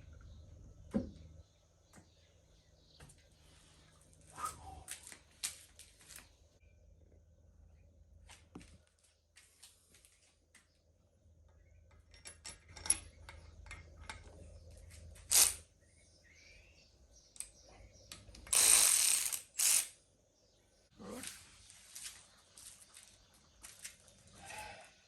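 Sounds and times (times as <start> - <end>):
tools and bolts clinking on metal: 11.4 - 15.6
rasping ratchet: 18.5 - 19.9.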